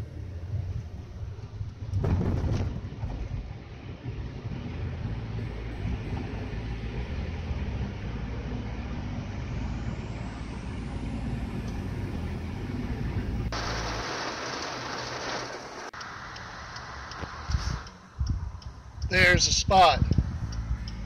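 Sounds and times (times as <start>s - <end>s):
low rolling travel rumble: 0.0s - 21.0s
steady hiss: 13.6s - 18.0s.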